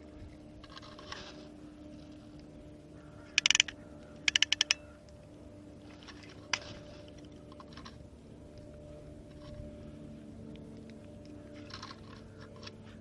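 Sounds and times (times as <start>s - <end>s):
faint steady hum: 0.0s - 13.0s
sharp clicks: 3.4s - 4.8s.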